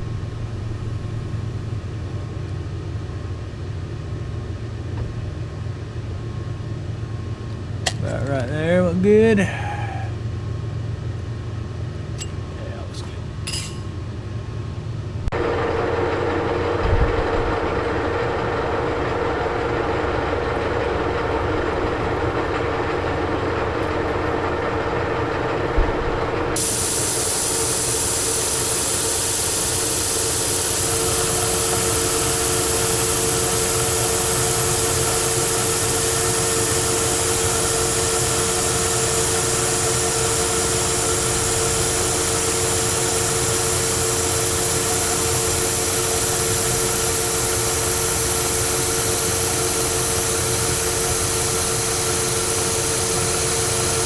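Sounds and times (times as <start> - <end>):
lathe humming: 15.3 - 54.0
steady hiss: 26.6 - 54.0.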